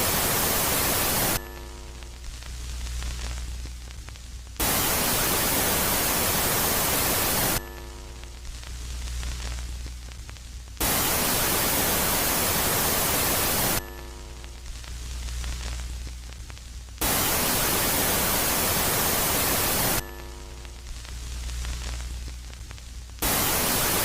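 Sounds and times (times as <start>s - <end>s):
loud static-like hiss: 0.0s - 24.0s
low hum: 7.6s - 11.2s.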